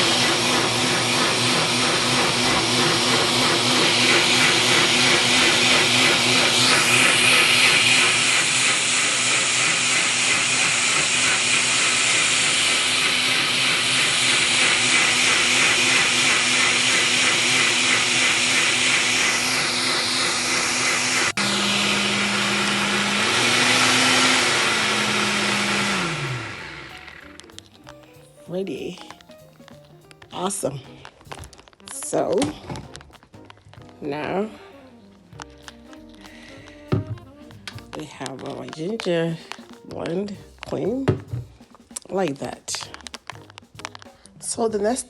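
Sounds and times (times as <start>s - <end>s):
blender running: 0.0s - 27.5s, 36.3s - 40.0s.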